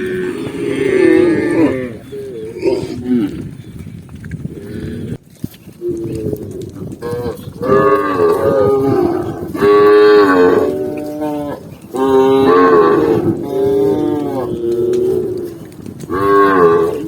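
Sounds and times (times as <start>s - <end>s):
cow mooing: 0.0s - 3.4s, 7.0s - 17.0s.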